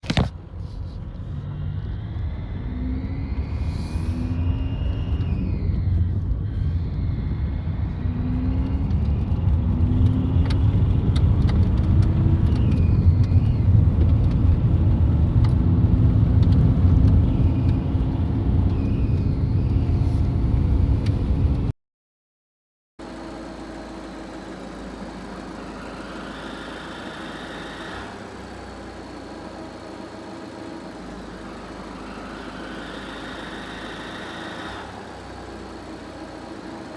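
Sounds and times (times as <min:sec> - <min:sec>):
diesel engine rumbling: 0:00.0 - 0:21.7, 0:23.0 - 0:36.9
faint turbo whistle: 0:00.6 - 0:10.8, 0:17.0 - 0:20.8, 0:24.7 - 0:29.4, 0:31.0 - 0:36.3.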